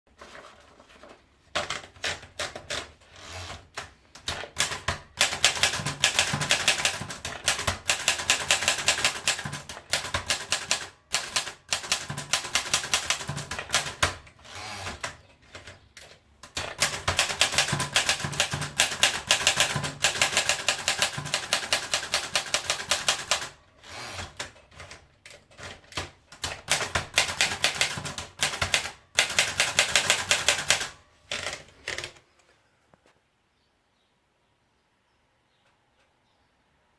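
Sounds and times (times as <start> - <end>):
manual typewriter key strikes: 3.7 - 23.5, 24.2 - 32.2.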